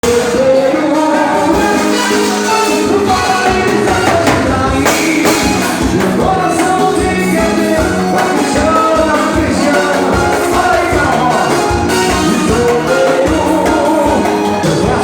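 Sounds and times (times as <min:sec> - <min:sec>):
person singing: 0:00.0 - 0:15.0
upbeat latin dance music: 0:00.0 - 0:15.0.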